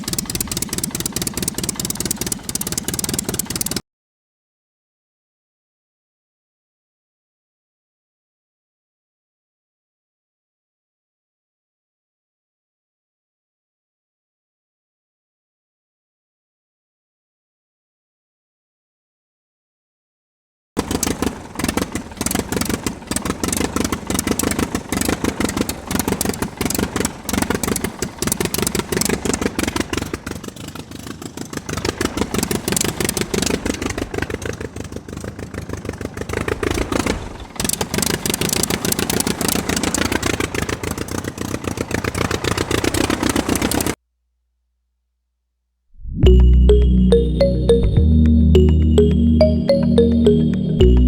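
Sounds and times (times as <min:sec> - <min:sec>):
diesel engine clattering: 0:00.0 - 0:03.8, 0:20.8 - 0:44.0.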